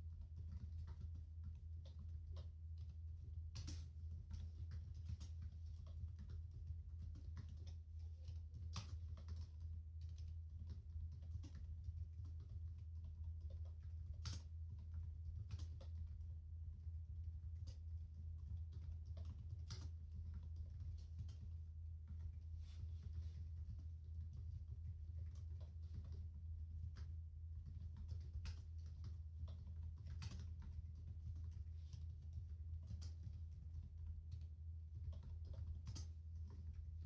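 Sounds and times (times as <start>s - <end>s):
low steady hum: 0.0s - 37.0s.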